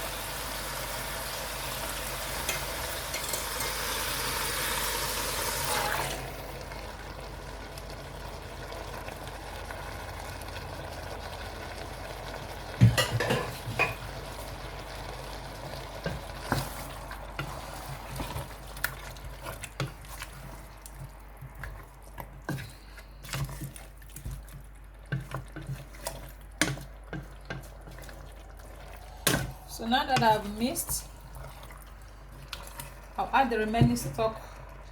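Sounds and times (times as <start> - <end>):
spoon scraping a cooking pot: 25.1 - 33.0.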